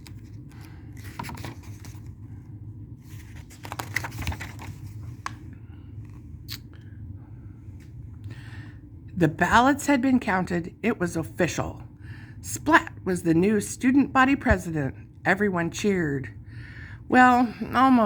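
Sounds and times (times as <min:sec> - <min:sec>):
book pages rustling: 0:00.0 - 0:06.3
steady low hum: 0:00.0 - 0:18.0.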